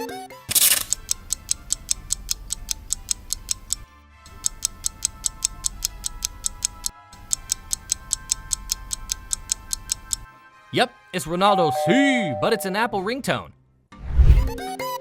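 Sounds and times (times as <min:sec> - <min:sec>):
phone ringtone ticking: 0:00.9 - 0:10.2, 0:11.6 - 0:12.9.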